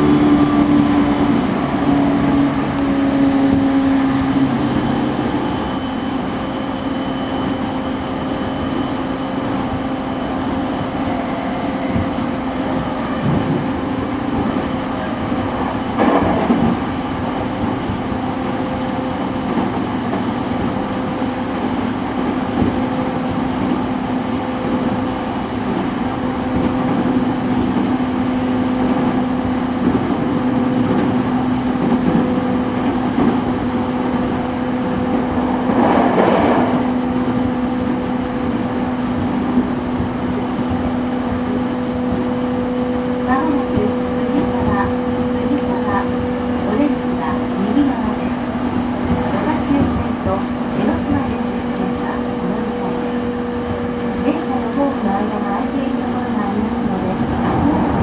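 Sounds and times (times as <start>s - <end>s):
train motor hum: 0.0s - 58.0s
wheels rumbling on rail: 0.0s - 58.0s.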